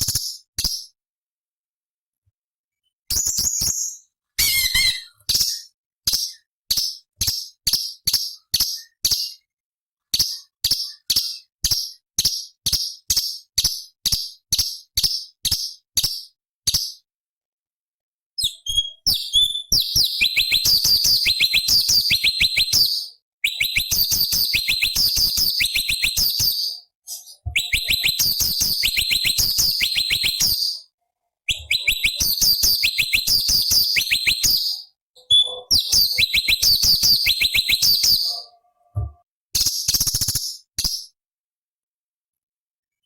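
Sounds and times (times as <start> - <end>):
bird singing sharp high notes: 4.4 - 5.7, 18.8 - 30.9, 31.5 - 39.0.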